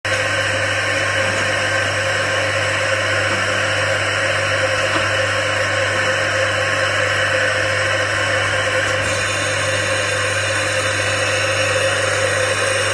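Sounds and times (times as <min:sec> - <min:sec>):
low machine hum: 0:00.1 - 0:12.9
blown air hissing: 0:06.5 - 0:12.9.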